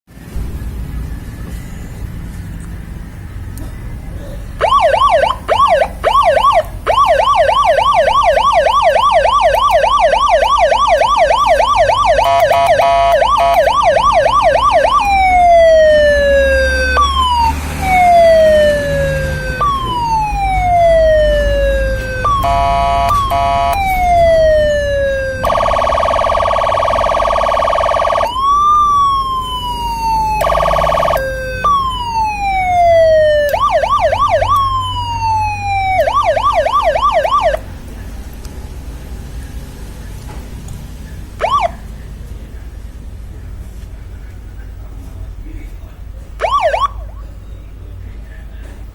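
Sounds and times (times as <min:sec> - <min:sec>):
electronic siren yelp and wail: 0:04.6 - 0:37.6, 0:41.4 - 0:41.8, 0:46.4 - 0:47.2
steady horn blasts: 0:14.8 - 0:25.6.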